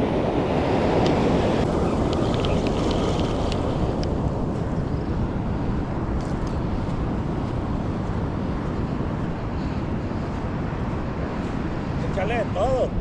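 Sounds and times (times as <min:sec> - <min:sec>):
ocean surf: 0:00.0 - 0:13.0
wind blowing across microphone: 0:00.0 - 0:13.0.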